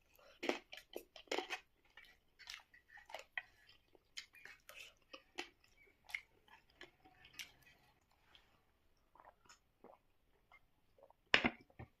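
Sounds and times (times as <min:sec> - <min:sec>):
person chewing and mouth smacks: 0:00.0 - 0:08.4.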